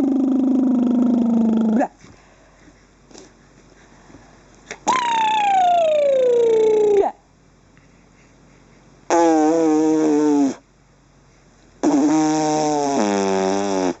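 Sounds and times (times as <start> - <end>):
raspberries blown with lips: 0.0 - 2.0, 4.7 - 7.2, 9.1 - 10.7, 11.8 - 14.0.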